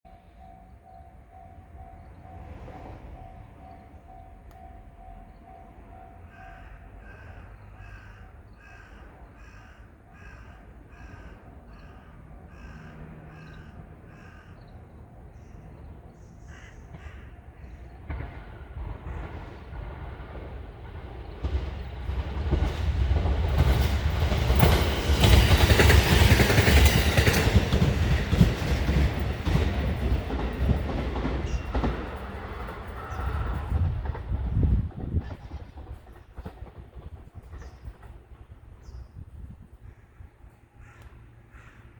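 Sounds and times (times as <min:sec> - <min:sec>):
level crossing warning bell ringing: 0:00.1 - 0:07.0
electric train passing: 0:00.1 - 0:41.9.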